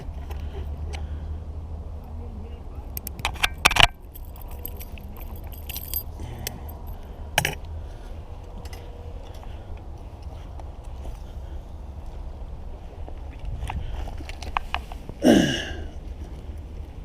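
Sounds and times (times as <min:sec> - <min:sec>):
small metal objects jingling: 0:03.3 - 0:07.6.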